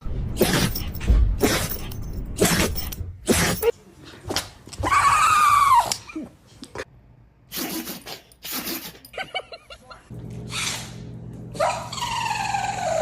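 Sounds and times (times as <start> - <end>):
dog sneezing: 0.4 - 3.7, 7.5 - 9.1.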